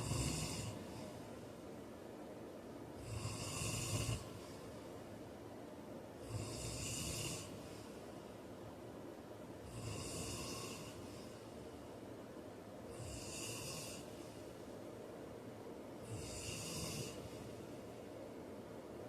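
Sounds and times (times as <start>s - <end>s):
man snoring: 0.0s - 0.9s, 3.0s - 4.4s, 6.2s - 7.6s, 9.6s - 11.0s, 12.9s - 14.2s, 16.0s - 17.4s.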